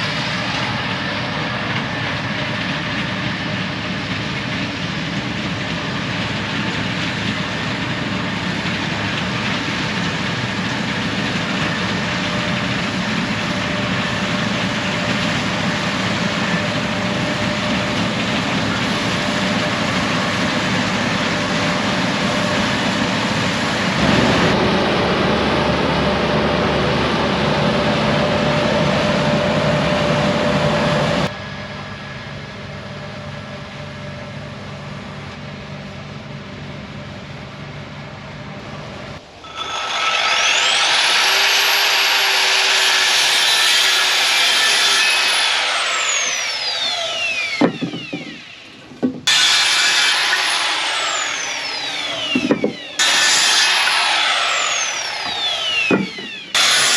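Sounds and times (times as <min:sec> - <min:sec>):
power saw cutting wood: 0:06.2 - 0:31.3, 0:39.4 - 0:56.9.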